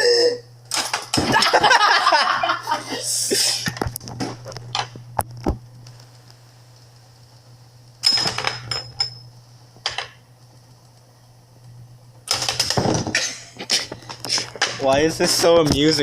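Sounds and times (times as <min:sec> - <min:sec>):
steady low hum: 0:00.0 - 0:16.0
metallic ring: 0:08.0 - 0:09.3
typewriter clacking: 0:12.3 - 0:12.9.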